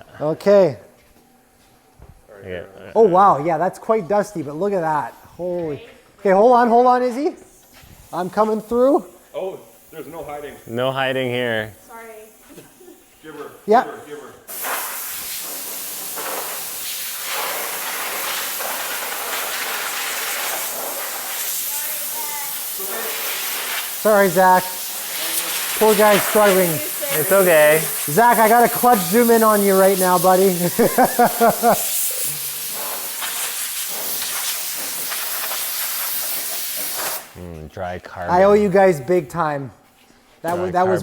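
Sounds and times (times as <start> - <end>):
compressed air blow gun hissing: 14.5 - 37.4.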